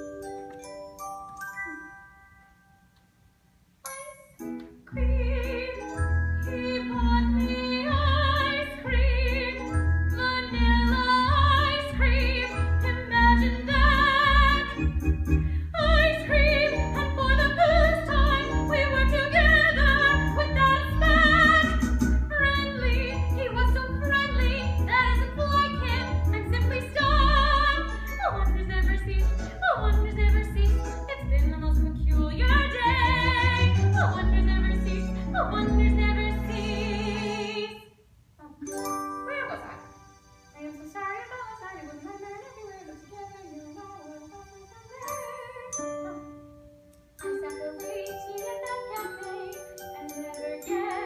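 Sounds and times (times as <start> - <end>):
bell-like notes: 0.0 - 3.0, 38.7 - 51.0
woman singing operatically: 4.9 - 14.8, 15.7 - 39.8, 40.7 - 46.3, 47.4 - 51.0
recorded accompaniment with bass: 5.0 - 37.2.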